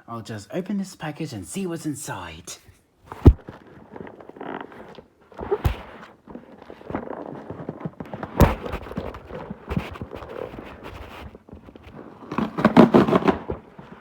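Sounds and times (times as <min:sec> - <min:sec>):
packaging rustling and scraping: 0:03.3 - 0:14.0.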